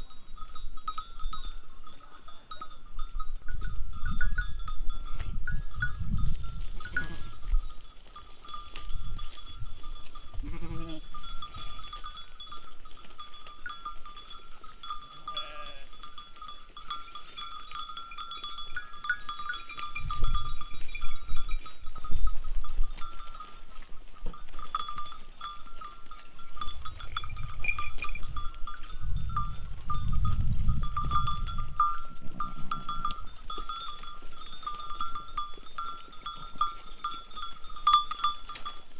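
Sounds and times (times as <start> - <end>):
animal bells clinking: 0.0 - 38.9
sheep or goat bleating: 6.9 - 7.4, 10.4 - 11.1, 15.2 - 16.0.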